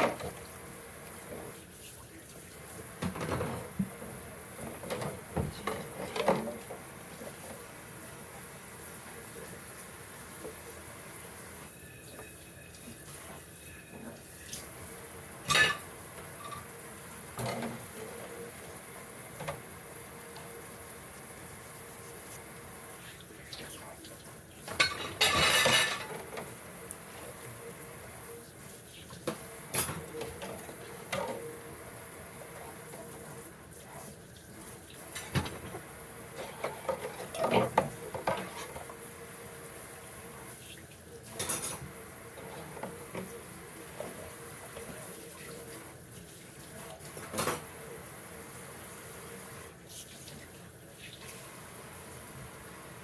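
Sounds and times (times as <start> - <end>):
pots and pans clattering: 0.0 - 0.5, 2.9 - 7.6, 15.4 - 18.5, 24.6 - 27.3, 29.2 - 31.7, 35.0 - 39.1, 41.3 - 45.1.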